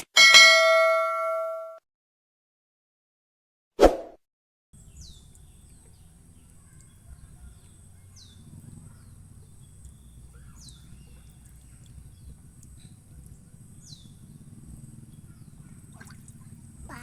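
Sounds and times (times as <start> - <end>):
bird calling: 4.8 - 17.0.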